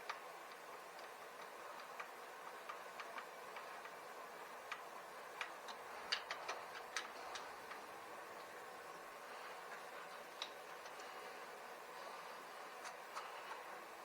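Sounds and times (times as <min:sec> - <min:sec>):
small parts clicking and tapping: 0:00.0 - 0:04.0, 0:04.6 - 0:08.5.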